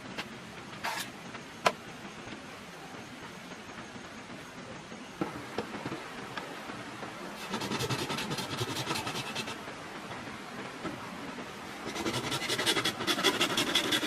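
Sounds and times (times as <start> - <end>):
rapid rhythmic scraping: 7.3 - 9.7, 11.7 - 14.0.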